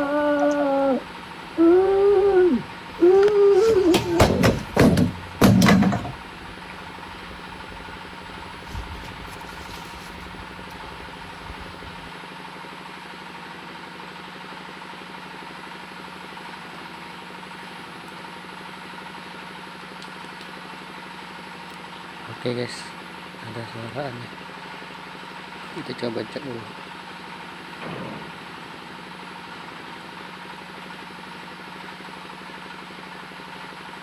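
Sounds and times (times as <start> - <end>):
steady machine hum: 0.0 - 12.1.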